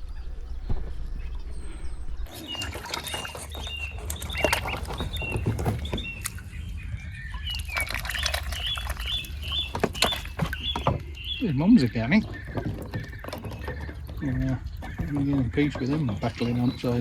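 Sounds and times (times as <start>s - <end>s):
waterbird chicks peeping: 0.0s - 17.0s
low steady rumble: 5.0s - 10.4s.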